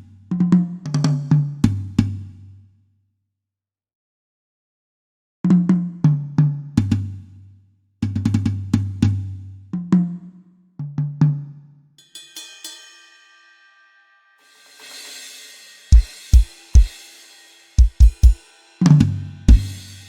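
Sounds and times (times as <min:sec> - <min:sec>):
cymbal strikes ringing: 0:12.0 - 0:20.0
tom drum fills: 0:14.4 - 0:20.0.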